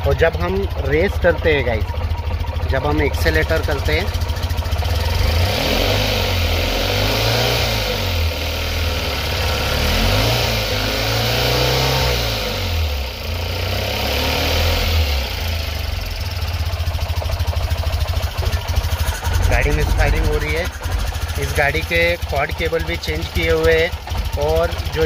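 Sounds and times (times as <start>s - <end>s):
car engine revving and misfiring: 3.0s - 25.0s.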